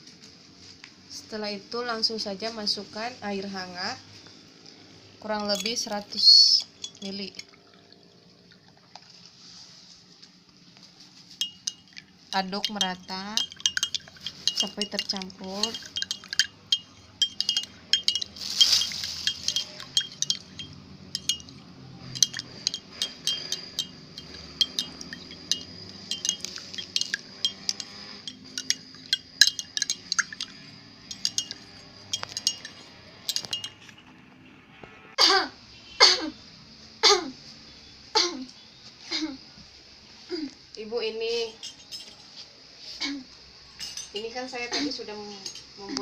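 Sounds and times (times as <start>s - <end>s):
spoon clinking in a glass: 5.3s - 7.7s, 11.4s - 34.1s.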